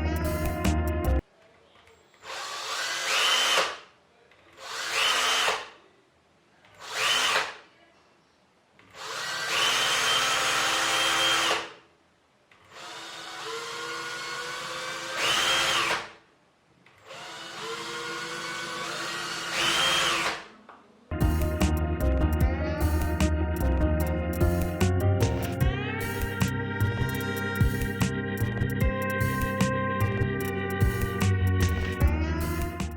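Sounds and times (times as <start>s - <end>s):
electric drill whining: 2.2s - 3.8s, 4.6s - 5.6s, 6.8s - 7.5s, 9.0s - 11.7s, 12.6s - 16.0s, 17.0s - 20.4s.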